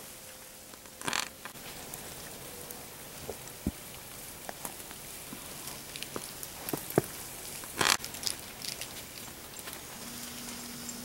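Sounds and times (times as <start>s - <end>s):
small ticks and drips: 0.7s - 11.0s
rustling crunch: 3.1s - 10.7s.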